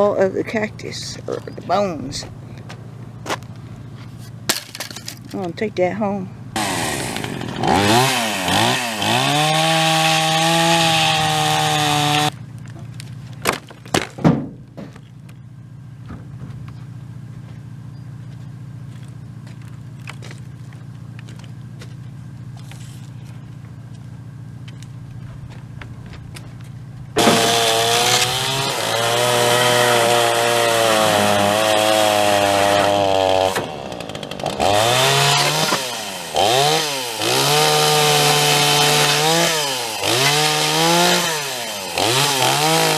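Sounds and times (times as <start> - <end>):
chainsaw cutting wood: 6.6 - 12.4, 27.2 - 42.9
sharp knocks: 27.2 - 28.2.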